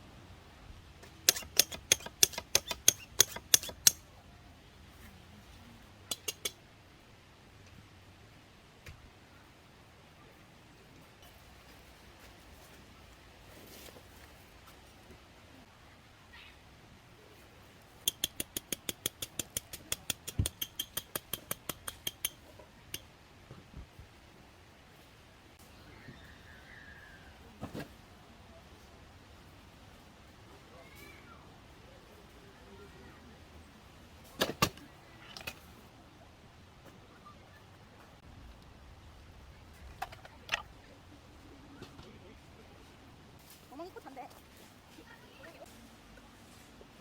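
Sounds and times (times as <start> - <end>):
sharp clicks: 1.2 - 4.0, 6.1 - 6.6, 18.0 - 23.1.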